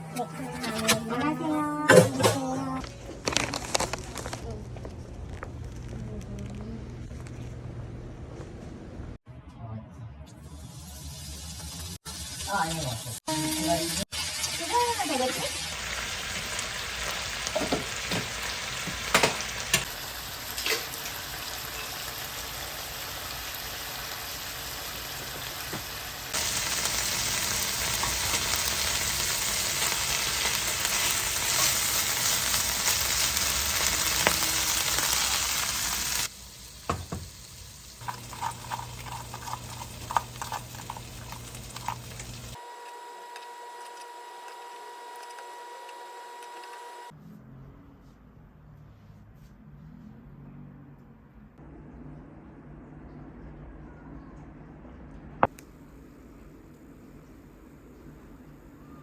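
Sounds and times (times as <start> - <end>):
food sizzling in a pan: 10.7 - 43.3
stirring clicks and scrapes: 38.0 - 46.7.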